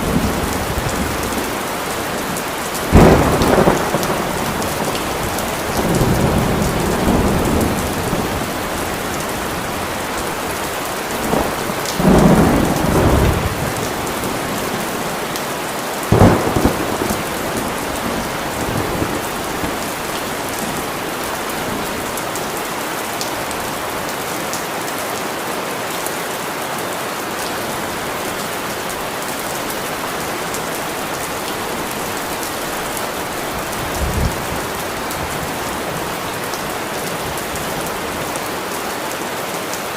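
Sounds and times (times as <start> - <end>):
thunder rumbling: 0.0 - 15.4, 16.1 - 22.6, 27.6 - 38.3
steady rain: 0.0 - 39.9
sharp thunderclap: 2.9 - 8.6, 11.3 - 14.8, 16.1 - 19.9.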